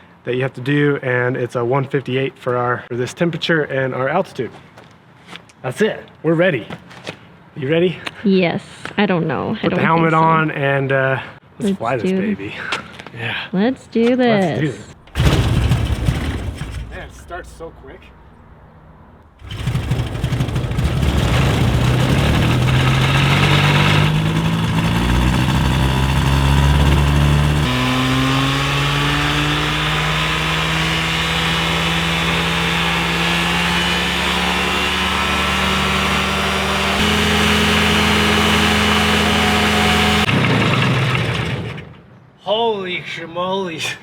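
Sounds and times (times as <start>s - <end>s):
aircraft engine and propeller: 40.2s - 42.0s.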